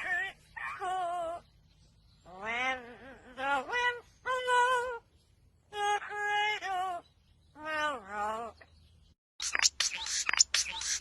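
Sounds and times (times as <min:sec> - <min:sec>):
bird calls with gliding pitch: 0:08.4 - 0:11.0.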